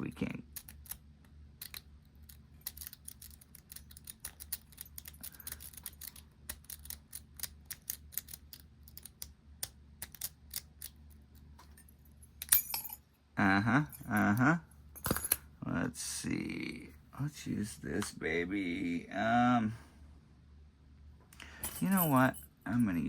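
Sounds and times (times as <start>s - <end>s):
lock pick clicking in lock: 1.6s - 11.0s.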